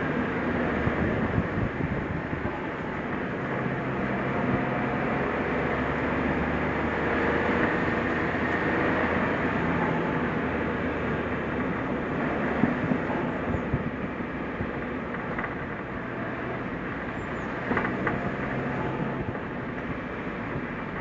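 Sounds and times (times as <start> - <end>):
car engine drone: 0.0 - 21.0
road noise: 0.0 - 21.0
knocks and rattles: 17.6 - 18.5.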